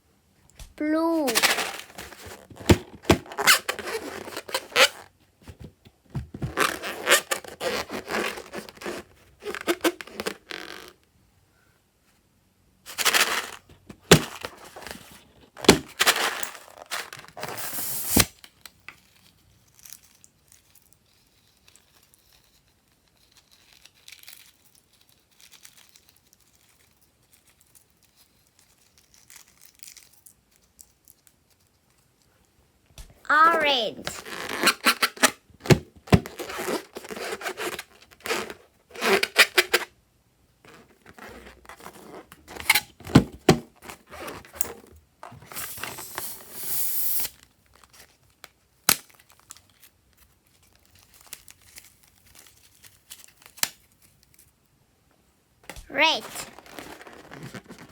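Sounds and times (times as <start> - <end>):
slime and balloon crinkling: 55.7 - 57.9.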